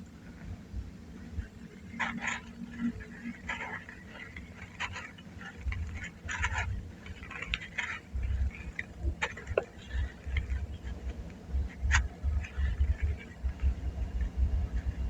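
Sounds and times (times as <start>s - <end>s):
dull low thumps: 5.7s - 15.0s.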